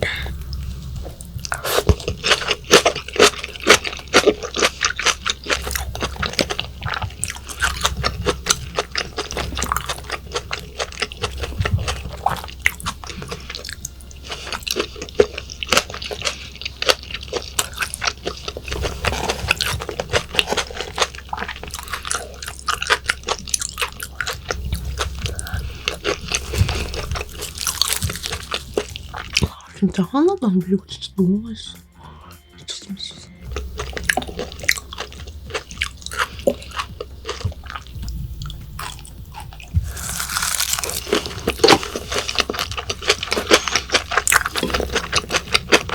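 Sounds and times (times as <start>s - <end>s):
close chewing mouth sounds: 0.0s - 29.8s, 33.4s - 45.9s.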